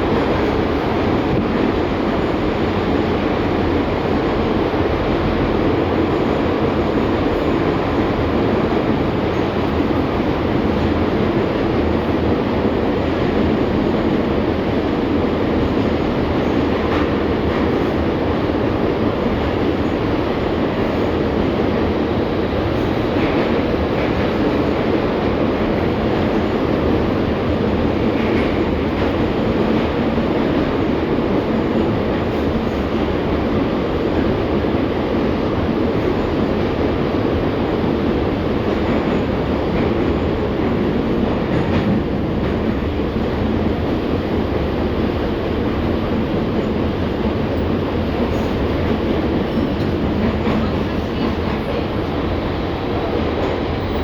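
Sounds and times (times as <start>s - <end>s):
tram wheels rumbling on rails: 0.0s - 54.0s.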